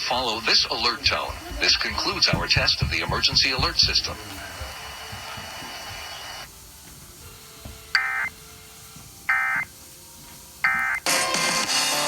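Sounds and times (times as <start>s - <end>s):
faint hiss: 0.0s - 12.0s
harsh digital tone bursts: 8.0s - 8.3s.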